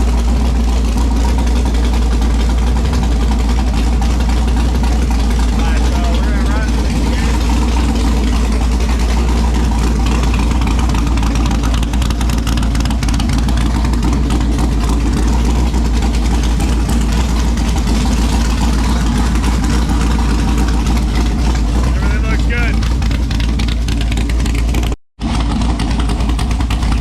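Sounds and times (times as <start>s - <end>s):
car engine idling: 0.0s - 27.0s.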